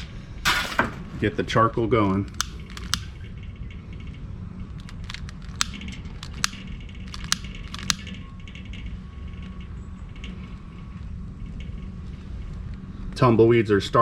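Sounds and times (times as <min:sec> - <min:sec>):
fire starter clicks and crackles: 0:00.0 - 0:10.4
low background rumble: 0:00.0 - 0:14.0.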